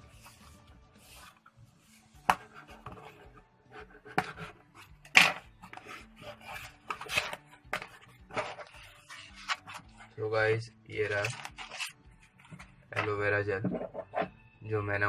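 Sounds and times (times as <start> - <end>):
rustling packaging: 11.1 - 12.6
package being opened by hand: 11.2 - 12.0.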